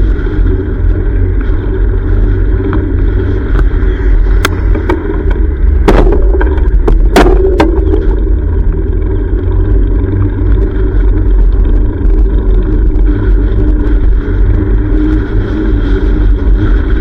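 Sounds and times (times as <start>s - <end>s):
wind and road rumble: 0.0s - 17.0s
sharp clicks and knocks: 4.4s - 8.3s.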